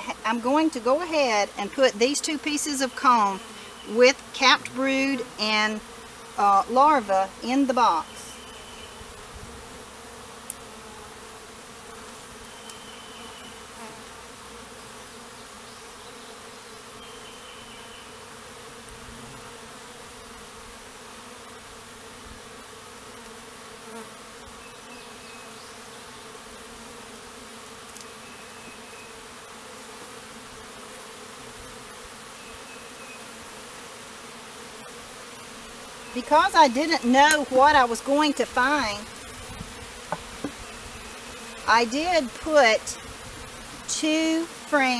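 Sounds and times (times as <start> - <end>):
honeybee swarm buzzing: 0.0 - 44.9.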